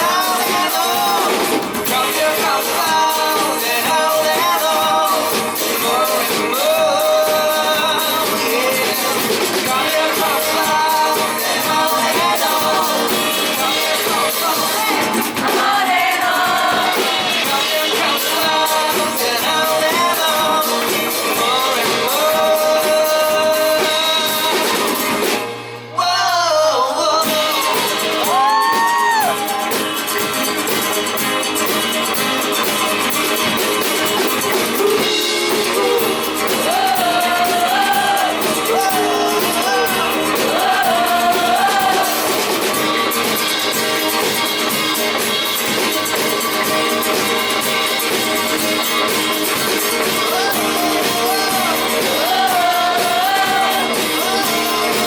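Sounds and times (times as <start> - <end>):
person singing: 0.0 - 25.2, 25.9 - 30.2, 34.6 - 44.4, 48.0 - 55.0
acoustic rock band playing: 0.0 - 55.0.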